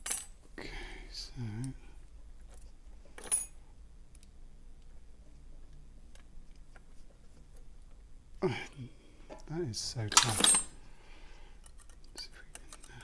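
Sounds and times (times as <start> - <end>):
hand tools clicking on metal: 10.1 - 10.7.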